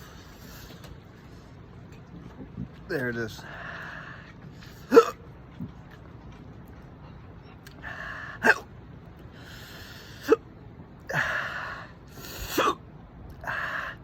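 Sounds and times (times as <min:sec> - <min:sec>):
loud breaths: 0:03.4 - 0:04.9, 0:07.8 - 0:08.5, 0:09.3 - 0:10.4, 0:11.1 - 0:12.6, 0:13.4 - 0:14.0
man hiccuping: 0:04.9 - 0:05.2, 0:08.4 - 0:08.7, 0:10.2 - 0:10.4, 0:12.5 - 0:12.8.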